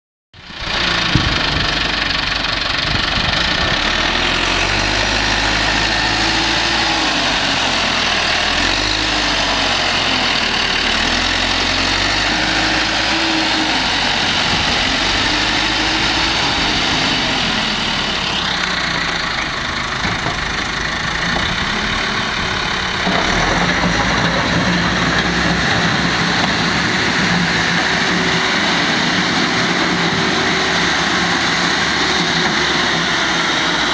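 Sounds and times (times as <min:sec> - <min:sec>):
diesel engine running: 0:00.4 - 0:33.9.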